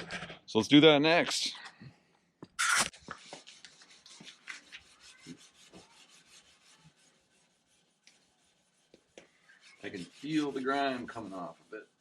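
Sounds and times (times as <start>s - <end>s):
steel wool scrubbing chrome: 3.1s - 12.0s.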